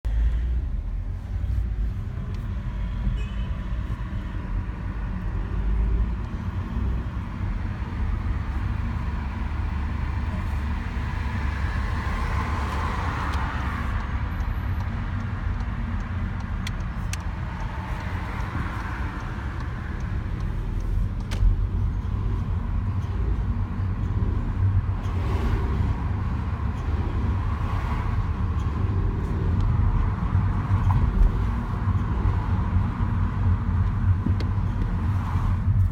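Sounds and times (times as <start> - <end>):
sharp clicks: 13.2 - 21.6.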